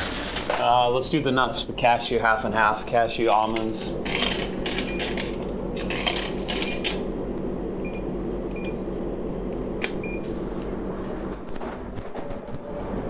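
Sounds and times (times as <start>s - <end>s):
steady low hum: 0.0s - 13.0s
coins clinking: 4.1s - 7.0s.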